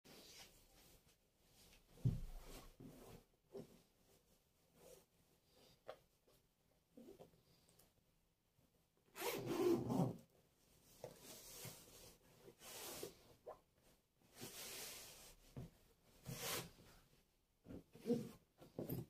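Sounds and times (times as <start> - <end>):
zipper being pulled: 9.2 - 10.2.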